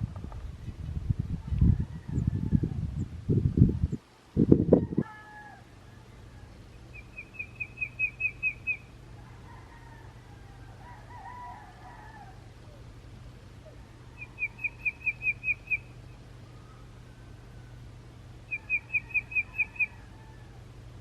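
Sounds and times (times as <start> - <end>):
steady low hum: 0.0 - 21.0
songbird whistling: 6.9 - 8.9, 14.2 - 16.8, 18.5 - 20.0.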